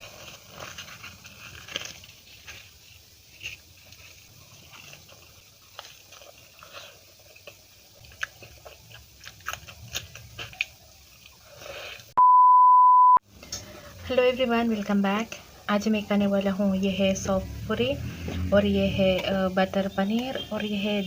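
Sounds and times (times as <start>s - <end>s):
crisp crunches: 0.0s - 12.0s
person chewing food: 0.0s - 12.2s.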